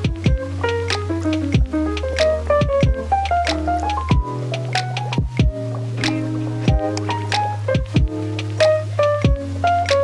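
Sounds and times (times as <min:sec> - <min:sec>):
held bass line: 0:00.0 - 0:10.0
drum hits: 0:02.6 - 0:03.0, 0:04.1 - 0:04.3, 0:05.1 - 0:08.2.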